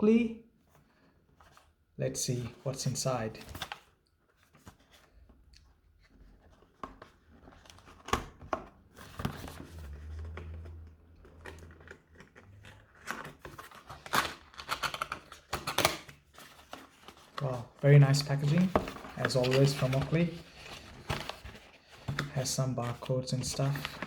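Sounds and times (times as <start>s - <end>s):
packaging rustling and tearing: 6.0s - 24.0s.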